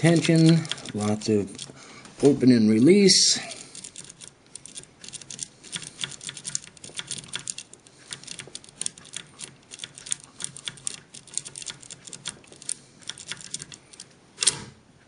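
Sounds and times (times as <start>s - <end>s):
lock pick clicking in padlock: 3.8s - 14.6s.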